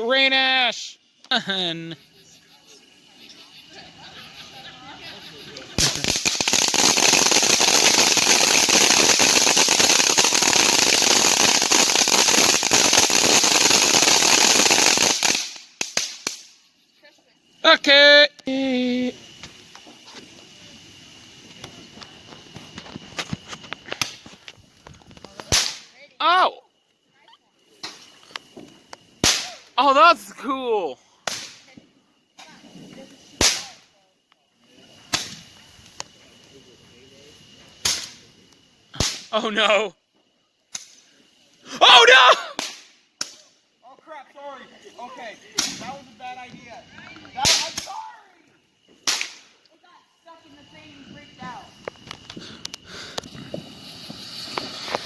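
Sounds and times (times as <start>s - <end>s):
firework crackling hiss: 0.0s - 55.0s
firework pops: 5.6s - 16.6s, 19.3s - 20.6s, 21.4s - 26.0s, 27.8s - 29.8s, 31.2s - 31.8s, 32.4s - 33.8s, 35.1s - 36.5s, 37.8s - 39.3s, 40.7s - 41.0s, 42.6s - 43.6s, 45.5s - 48.0s, 48.9s - 49.7s, 51.2s - 55.0s.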